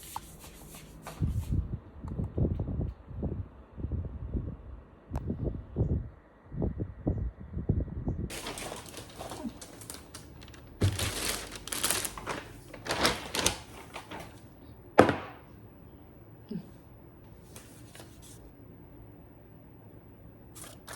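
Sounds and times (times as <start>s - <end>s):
rustling: 8.3s - 14.4s.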